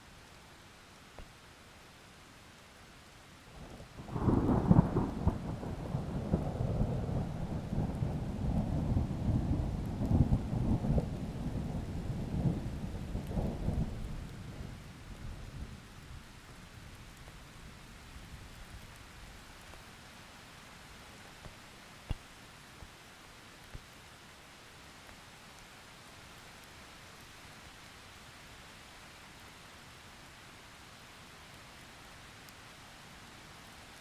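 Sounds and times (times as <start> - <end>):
steady rain hiss: 0.0 - 34.0
thunder rumbling: 4.0 - 14.8.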